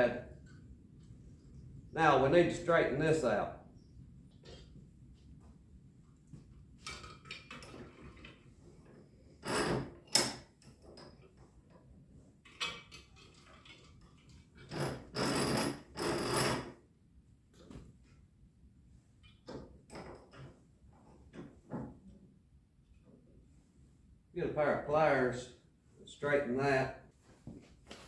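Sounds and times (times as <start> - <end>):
metal parts and tools rattling: 12.4 - 16.7.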